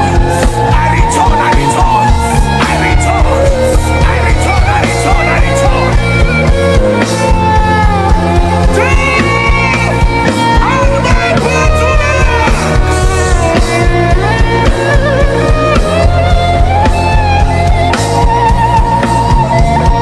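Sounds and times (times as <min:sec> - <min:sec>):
instrumental worship music: 0:00.0 - 0:20.0.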